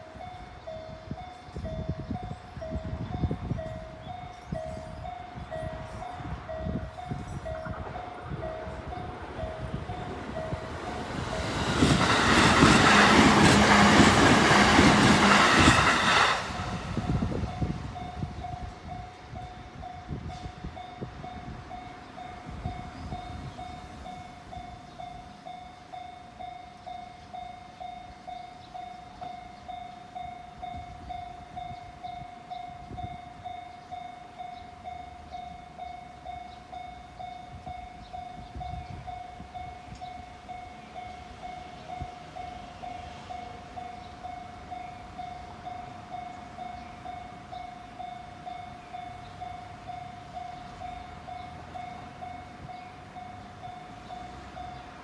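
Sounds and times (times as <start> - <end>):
level crossing warning bell: 0.0 - 55.0
steady train hum: 0.0 - 55.0
train wheel and running noise: 0.2 - 25.3.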